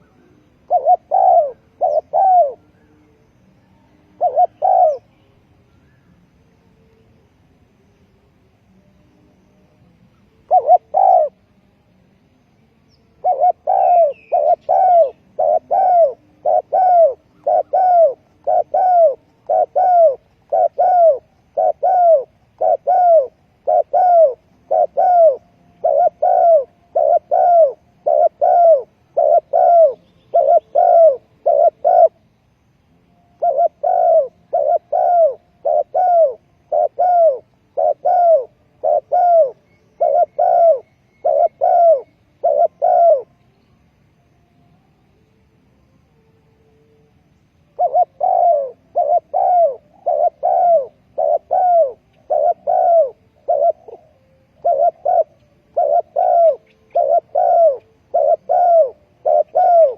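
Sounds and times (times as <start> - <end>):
dove cooing: 0.0 - 5.2, 10.2 - 11.5, 13.2 - 32.3, 33.4 - 43.4, 47.6 - 59.9.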